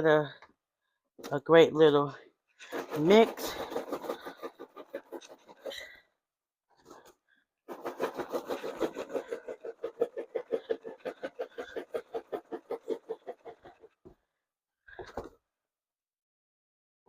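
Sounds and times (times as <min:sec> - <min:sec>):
popcorn rattling in shaken container: 0:02.6 - 0:05.9, 0:07.7 - 0:13.8.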